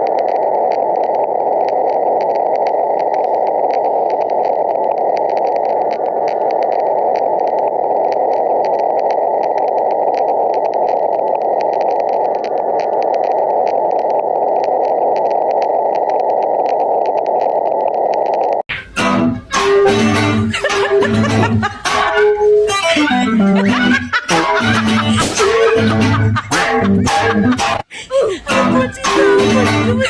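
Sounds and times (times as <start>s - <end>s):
static hiss: 0.0s - 18.6s.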